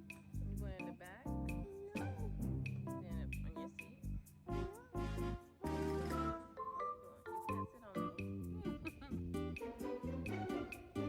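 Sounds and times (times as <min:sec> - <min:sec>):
bass line: 0:00.4 - 0:06.4.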